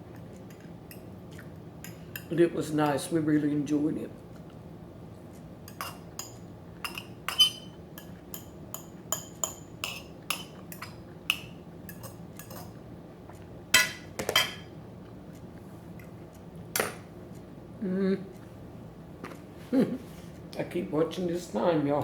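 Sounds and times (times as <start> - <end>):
cutlery clinking on plate: 5.7 - 12.8
cutlery scraping plate: 5.7 - 12.8.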